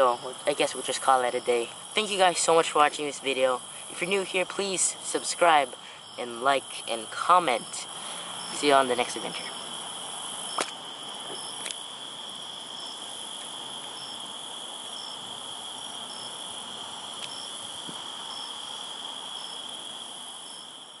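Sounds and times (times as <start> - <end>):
crickets chirping: 0.0 - 21.0.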